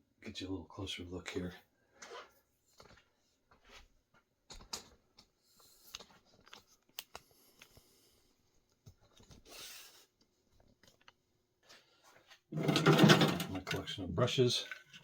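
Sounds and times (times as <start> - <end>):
handling clicks and knocks: 12.6 - 13.9.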